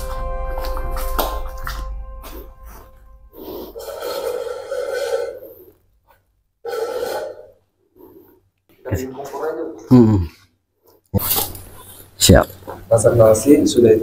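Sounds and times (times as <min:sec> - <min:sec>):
background music: 0:00.0 - 0:04.5.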